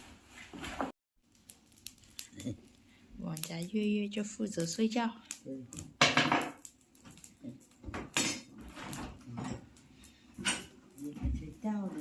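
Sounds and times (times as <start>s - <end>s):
hard objects clattering: 5.8s - 12.0s.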